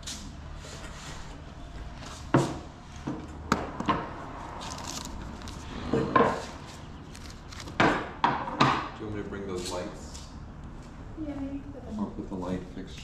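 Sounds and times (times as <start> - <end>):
wooden cutting boards knocking: 7.8 - 8.9.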